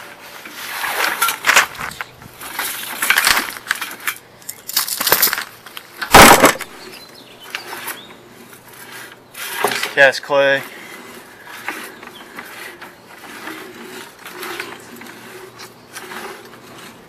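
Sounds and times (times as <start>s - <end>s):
cable scraping and rattling: 0.0s - 17.0s
loud clatter: 6.1s - 6.7s.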